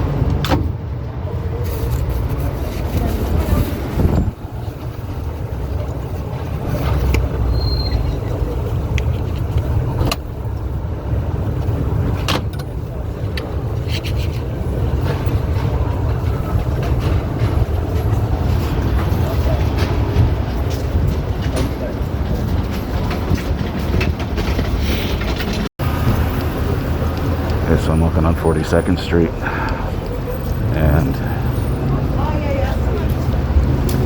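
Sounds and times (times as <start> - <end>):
traffic rumble: 0.0 - 34.0
voices of passers-by: 0.0 - 34.0.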